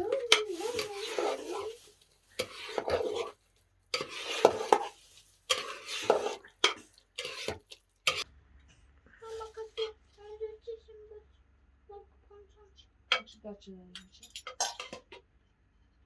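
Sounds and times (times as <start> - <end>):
metal utensil scraping a pot: 0.0 - 8.3, 14.4 - 15.2.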